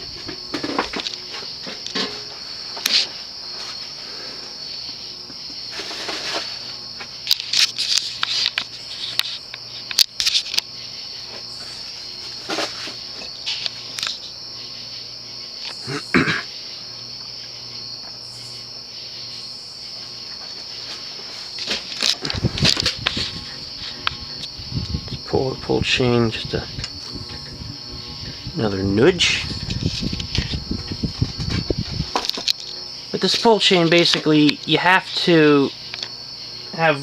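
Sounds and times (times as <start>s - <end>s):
faint low hum: 0.0s - 37.0s
insects trilling: 0.0s - 37.0s
clicks and rustles: 20.4s - 25.2s, 29.4s - 34.6s.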